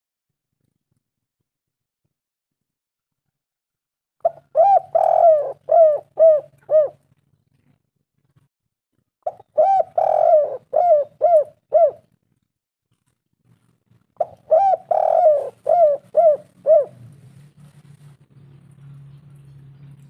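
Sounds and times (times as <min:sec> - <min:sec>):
dove cooing: 0:04.2 - 0:07.0, 0:09.3 - 0:12.1, 0:14.2 - 0:17.4.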